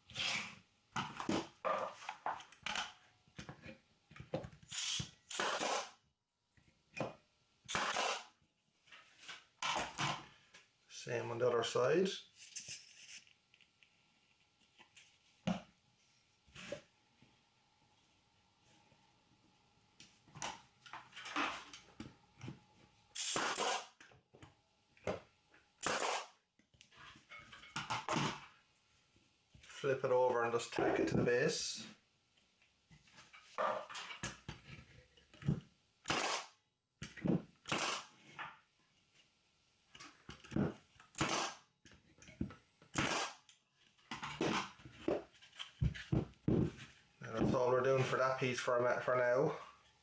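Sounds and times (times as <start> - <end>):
pin nailer firing with air hiss: 4.7 - 6.0, 7.7 - 8.3, 23.2 - 24.0, 25.8 - 26.4, 36.0 - 36.6, 37.7 - 38.1, 41.2 - 41.6, 43.0 - 43.4.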